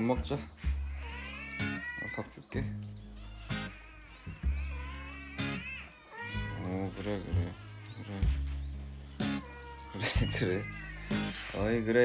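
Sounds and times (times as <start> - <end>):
background music: 0.0 - 12.0
cat meowing: 0.8 - 2.5, 3.1 - 8.4, 9.2 - 12.0.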